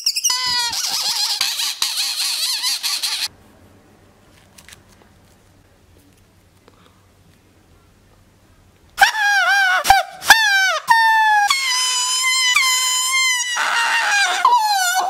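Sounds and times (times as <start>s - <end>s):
shrill noisemaker squealing: 0.0s - 3.3s, 9.0s - 15.0s.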